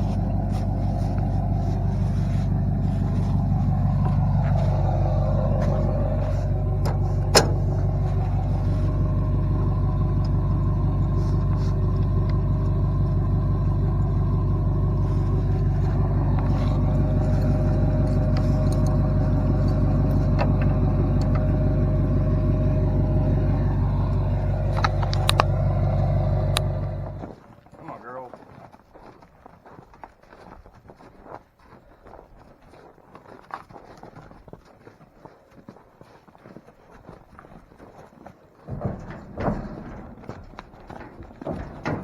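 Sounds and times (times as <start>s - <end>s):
truck engine droning: 0.0s - 27.4s, 38.7s - 42.0s
clicks: 15.2s - 27.2s.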